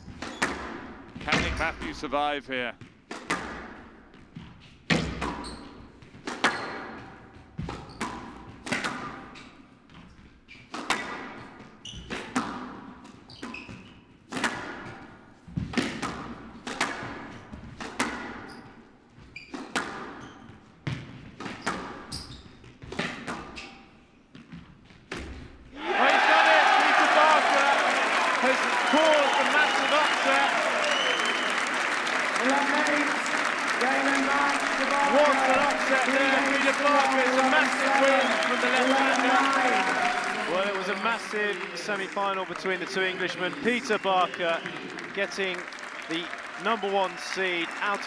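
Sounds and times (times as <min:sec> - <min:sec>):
squash ball hitting racket and walls: 0:00.0 - 0:01.4, 0:03.1 - 0:25.7.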